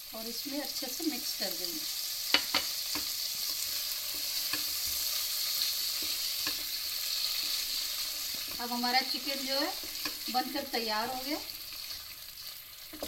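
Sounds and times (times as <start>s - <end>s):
chicken sizzling in a pan: 0.0s - 13.0s
spoon scraping a pan: 2.2s - 8.6s, 9.3s - 10.4s.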